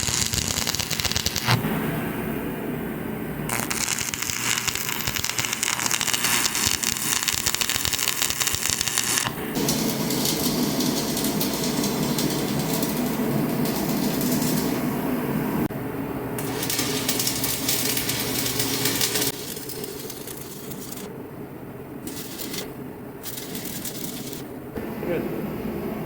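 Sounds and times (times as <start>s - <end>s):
arc welding crackling hiss: 0.0s - 1.6s, 3.5s - 14.9s, 16.4s - 21.1s, 22.0s - 24.5s.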